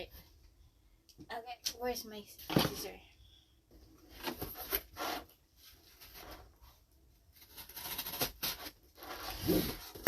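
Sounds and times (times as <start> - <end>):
objects rubbing and scraping: 4.1 - 6.9, 9.0 - 10.0.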